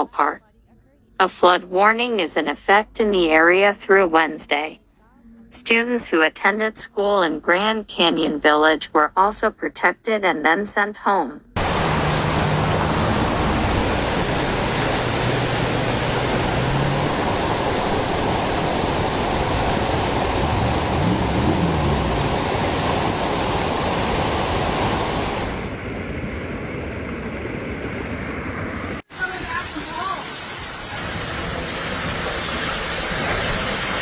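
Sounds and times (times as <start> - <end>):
floodwater rushing: 11.6 - 25.8, 29.1 - 34.0.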